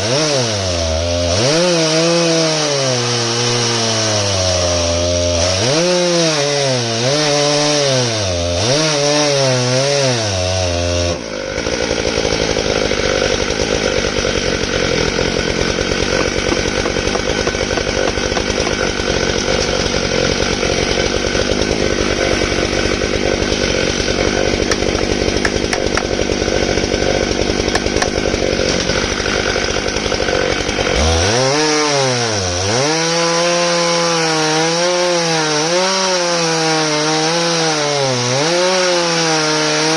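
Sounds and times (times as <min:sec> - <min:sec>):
chainsaw engine under load: 0:00.0 - 0:39.9
chain rasping through wood: 0:01.4 - 0:39.9.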